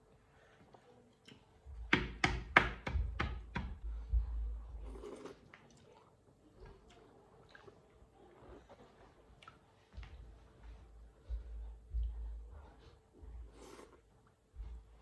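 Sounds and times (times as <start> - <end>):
eating noises: 4.7 - 10.2.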